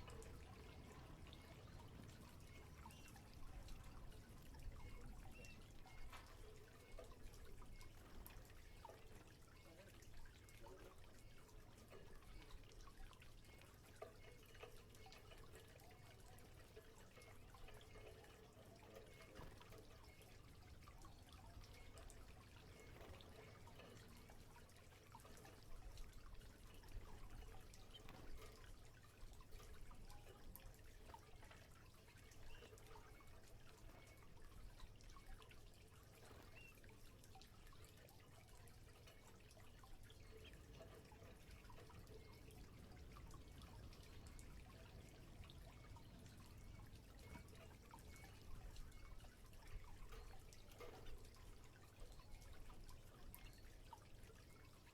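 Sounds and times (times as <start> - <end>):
water dripping and splashing: 0.0 - 54.9.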